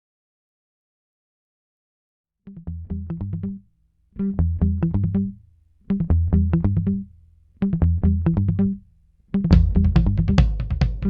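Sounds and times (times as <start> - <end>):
bass-heavy music with drums: 9.4 - 11.0.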